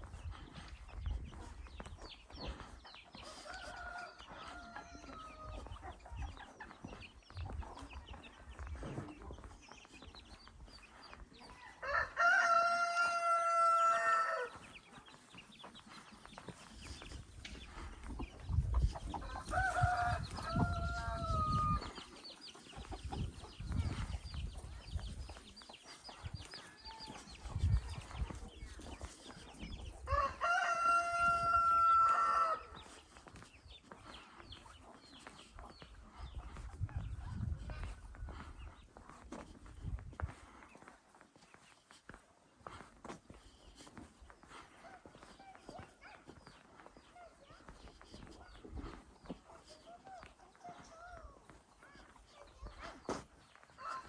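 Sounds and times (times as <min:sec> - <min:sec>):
rooster crowing: 0:11.8 - 0:14.5, 0:30.1 - 0:32.7.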